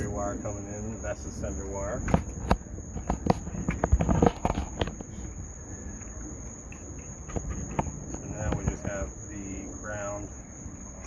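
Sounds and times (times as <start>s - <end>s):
clicks and knocks of wires: 2.0s - 5.4s, 6.7s - 9.0s.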